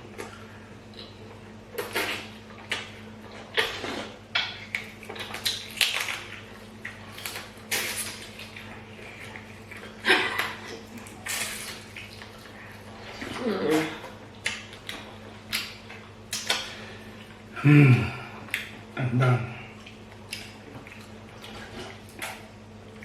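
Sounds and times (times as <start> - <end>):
slurping soup: 3.6 - 4.2.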